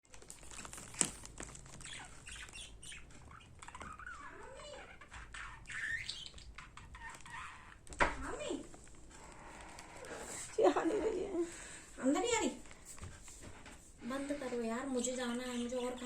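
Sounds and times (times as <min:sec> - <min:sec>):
budgerigar chattering and chirping: 0:01.8 - 0:07.8.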